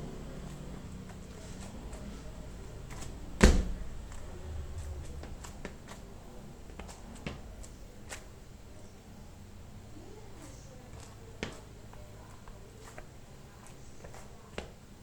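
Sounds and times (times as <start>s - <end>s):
heavy thump: 2.9s - 7.6s.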